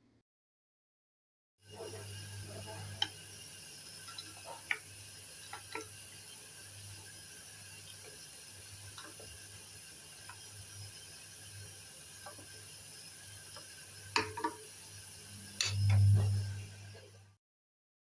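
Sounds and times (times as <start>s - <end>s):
ticks and pops of heating pot: 2.9s - 3.2s, 4.0s - 6.0s, 8.8s - 9.4s, 12.2s - 12.6s, 13.5s - 14.7s, 15.6s - 16.2s
steady low hum: 15.3s - 17.3s.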